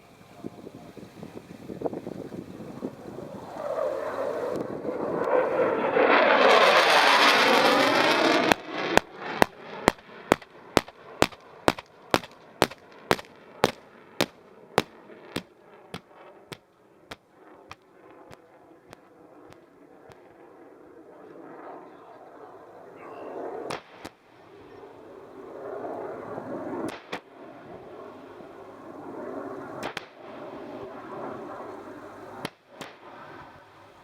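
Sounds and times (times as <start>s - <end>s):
jet aircraft noise: 0.0s - 34.0s
sharp pyrotechnic bangs: 7.2s - 20.4s, 23.7s - 24.2s.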